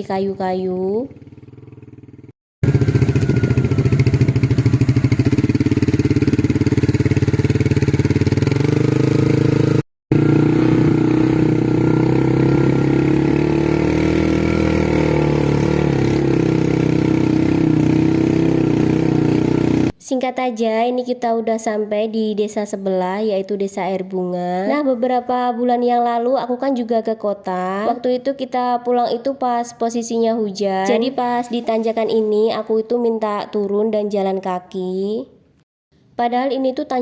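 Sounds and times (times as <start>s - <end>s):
small motorcycle engine running: 0.2s - 20.0s.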